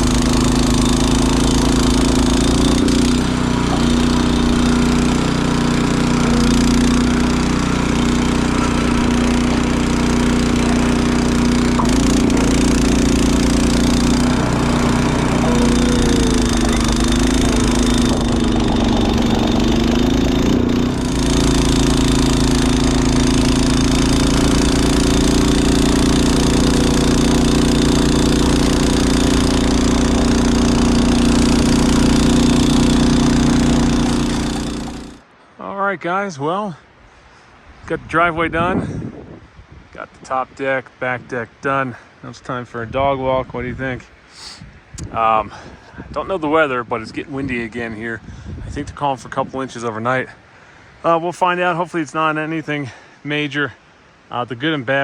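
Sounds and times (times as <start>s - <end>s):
snowblower engine running: 0.0s - 35.2s.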